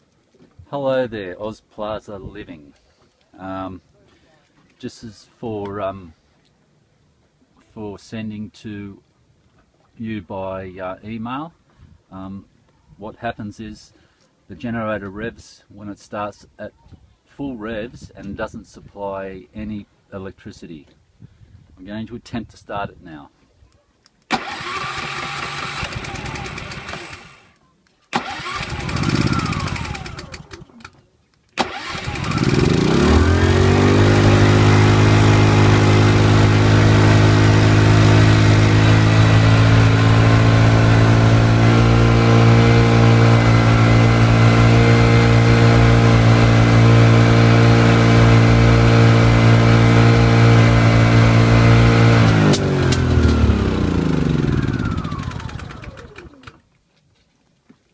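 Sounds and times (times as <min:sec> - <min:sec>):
generator engine running: 0:24.3 - 0:27.5, 0:28.2 - 0:30.9, 0:31.6 - 0:56.6.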